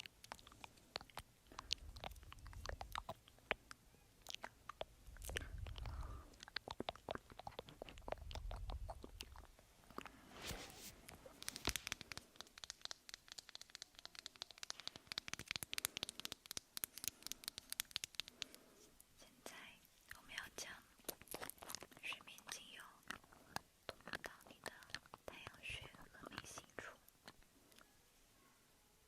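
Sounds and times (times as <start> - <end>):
wet mouth clicks and smacks: 0.0 - 10.2, 11.1 - 18.7, 19.5 - 27.9
dense crisp crackle: 0.0 - 20.4.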